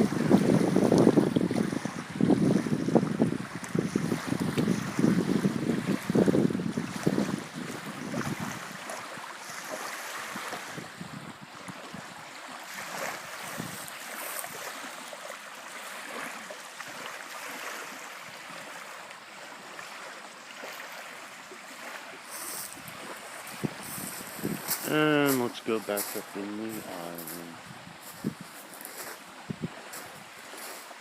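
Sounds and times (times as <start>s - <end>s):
wind blowing: 0.0s - 12.2s, 12.8s - 14.7s, 21.7s - 30.9s
lake water lapping: 0.0s - 31.0s.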